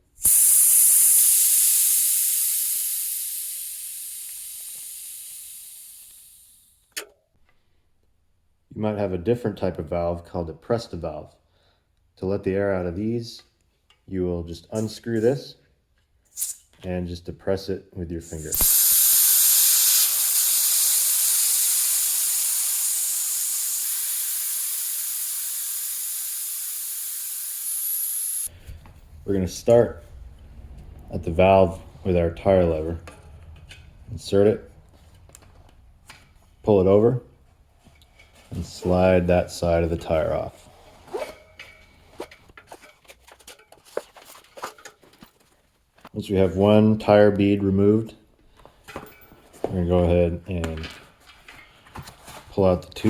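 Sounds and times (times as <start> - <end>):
air hissing out of tire valve: 0.0 - 6.7, 16.3 - 16.6, 18.3 - 29.2.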